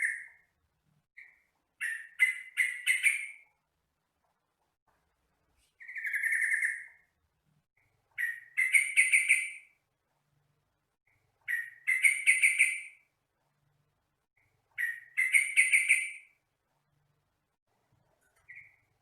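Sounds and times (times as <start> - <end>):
bird bubbly chattering song: 5.8 - 7.0, 8.2 - 9.7, 11.5 - 13.0, 14.8 - 16.3.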